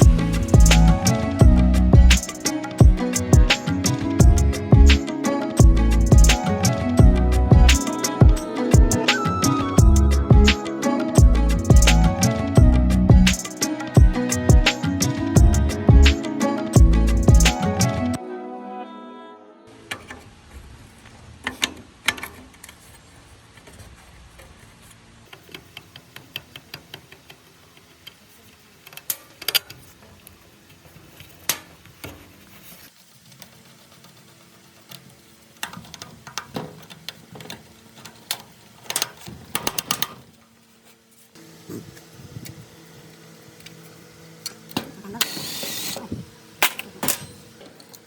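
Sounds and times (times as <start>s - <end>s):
tools and metal parts clicking: 34.8s - 40.4s.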